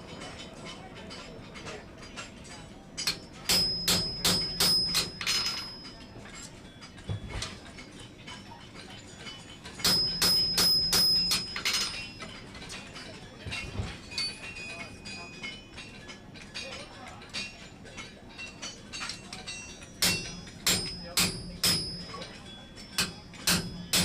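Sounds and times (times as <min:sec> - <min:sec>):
hammer striking iron on anvil: 0:03.0 - 0:06.0, 0:09.7 - 0:12.3, 0:18.4 - 0:24.0
anvil ringing: 0:03.0 - 0:06.2, 0:09.2 - 0:12.5, 0:18.4 - 0:24.0.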